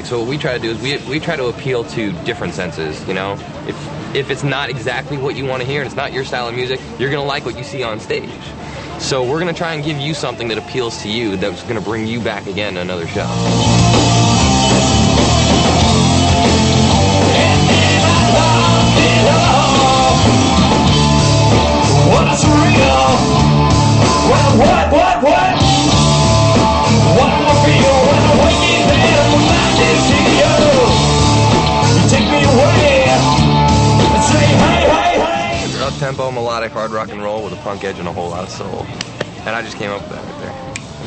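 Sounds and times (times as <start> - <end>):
punk rock band playing: 11.7 - 41.0
person singing: 17.0 - 21.2, 21.9 - 36.0.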